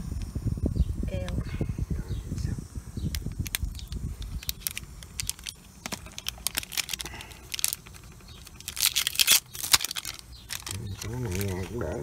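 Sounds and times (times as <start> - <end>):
packet crinkling: 3.1 - 11.9.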